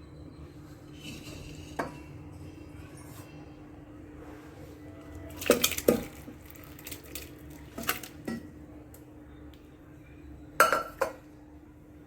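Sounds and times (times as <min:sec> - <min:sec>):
metal ladle clinking on pots: 0:05.4 - 0:08.5, 0:10.6 - 0:11.2.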